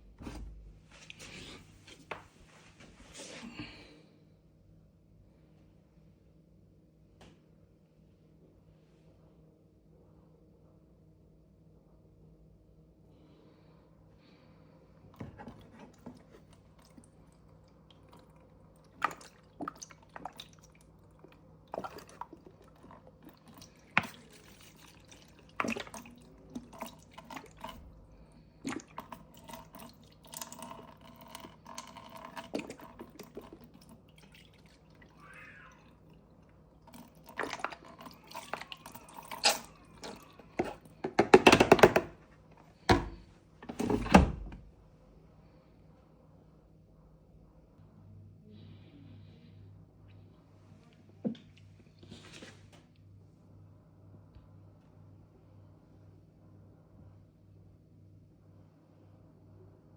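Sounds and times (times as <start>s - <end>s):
water dripping and splashing: 15.2s - 41.0s
handling knocks and clicks: 40.6s - 42.2s.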